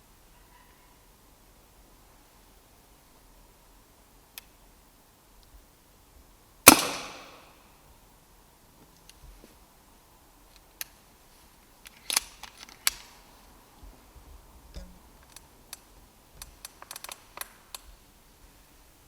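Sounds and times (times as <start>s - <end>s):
air rifle mechanical clicks: 11.8s - 13.2s, 14.8s - 17.9s.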